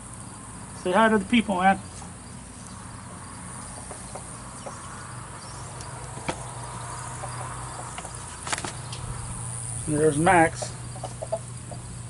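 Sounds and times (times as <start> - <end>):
crickets buzzing: 0.0 - 12.0
chickens clucking: 3.6 - 9.4, 10.2 - 12.0.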